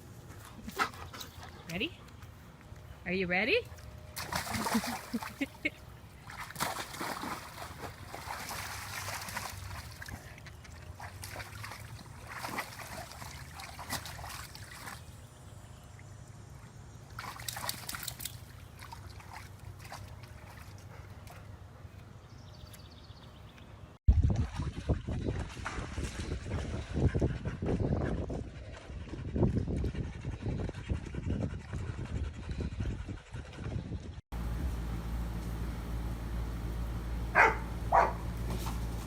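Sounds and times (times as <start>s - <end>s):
water splashing in a pool: 4.2s - 5.5s, 6.2s - 15.1s, 24.1s - 26.6s
loud low rumble: 34.3s - 39.0s.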